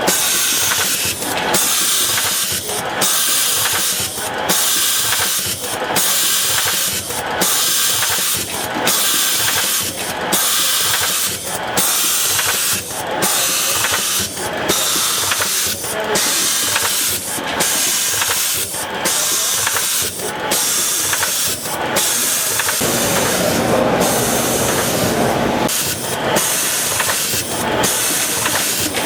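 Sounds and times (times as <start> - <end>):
spring coiling machine hiss: 0.1 - 29.0
low rushing noise: 22.8 - 25.7.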